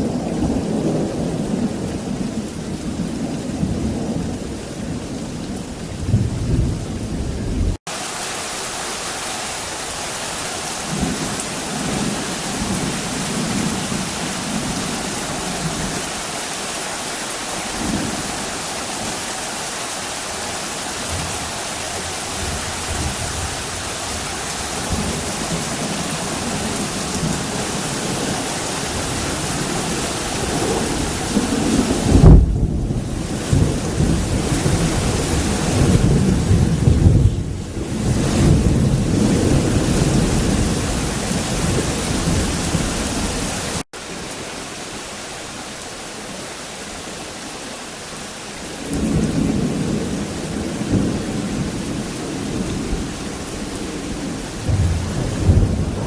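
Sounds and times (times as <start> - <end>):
thunder rumbling: 0.0 - 7.8, 21.1 - 43.8, 48.9 - 56.0
heavy rain downpour: 0.0 - 56.0
loud thunder clap: 30.4 - 42.8, 54.6 - 56.0.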